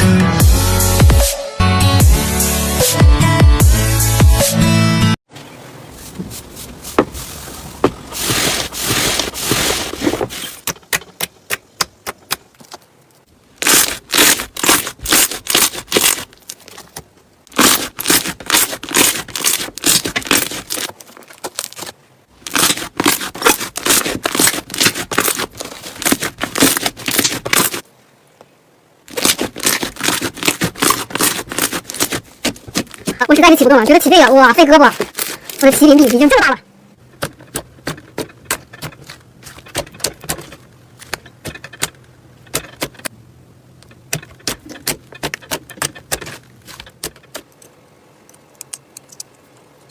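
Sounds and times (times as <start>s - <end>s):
slime being stirred by hand: 29.1s - 33.4s.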